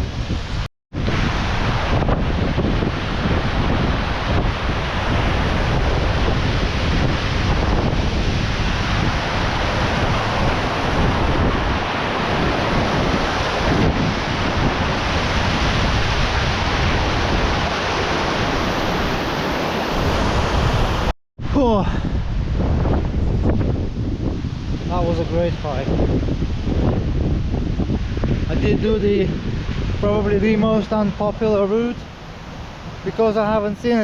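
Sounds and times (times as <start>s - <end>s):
wind rumbling on microphone: 0.0s - 34.0s
mountain stream rushing: 1.1s - 21.1s.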